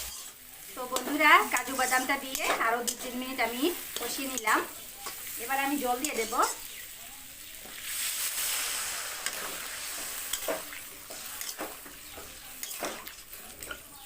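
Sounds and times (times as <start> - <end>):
spatula scraping pan: 0.0 - 6.7, 7.6 - 14.0
water sizzling in hot pan: 0.0 - 14.0.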